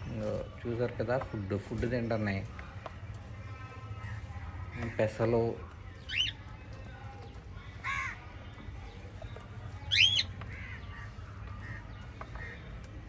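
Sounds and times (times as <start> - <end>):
cockatiels screeching: 6.0 - 6.4, 9.9 - 11.1.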